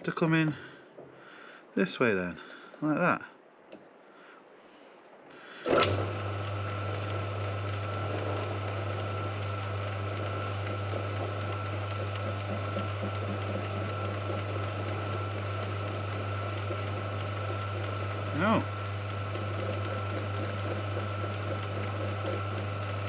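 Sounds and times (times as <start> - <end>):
lathe motor hum and whine: 5.6 - 23.0.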